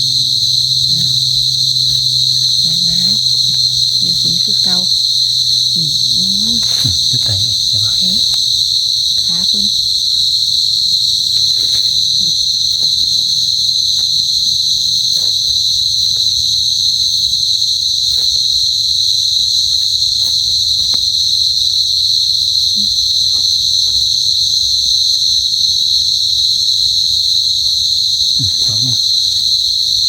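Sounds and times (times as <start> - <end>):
crickets trilling: 0.0 - 30.0
faint rustles and snaps: 11.0 - 16.7, 18.0 - 24.4.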